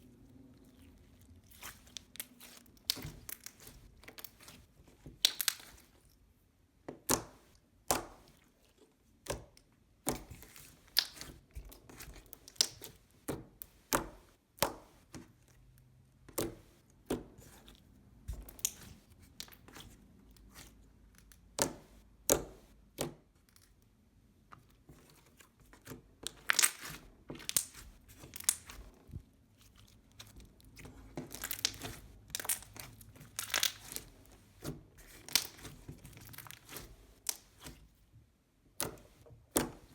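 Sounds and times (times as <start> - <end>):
slime squished by hand: 0.2 - 6.1, 10.0 - 13.0, 16.3 - 23.7, 25.1 - 38.0.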